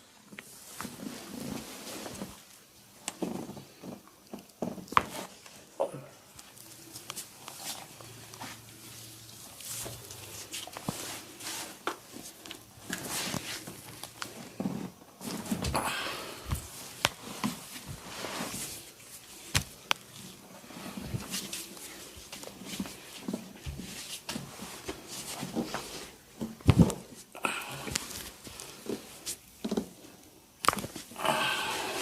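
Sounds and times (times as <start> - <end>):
hands rubbing skin and hair: 6.4 - 14.4, 16.5 - 26.2, 27.1 - 29.6.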